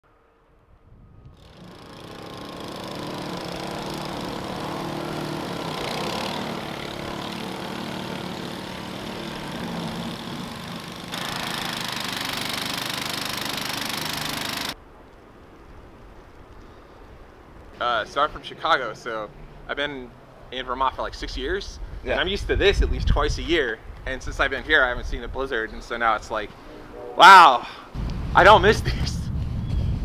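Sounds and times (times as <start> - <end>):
small engine running: 1.4 - 14.8, 28.0 - 29.0
loud rushing noise: 28.0 - 29.6.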